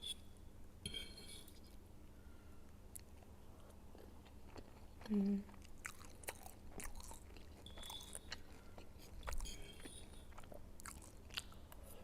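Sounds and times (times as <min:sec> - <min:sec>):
person chewing noodles: 0:02.9 - 0:12.0.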